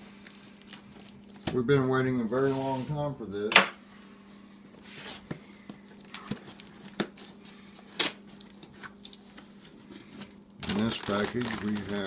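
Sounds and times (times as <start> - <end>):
plastic packaging crinkling: 0.2 - 1.5, 5.9 - 12.0.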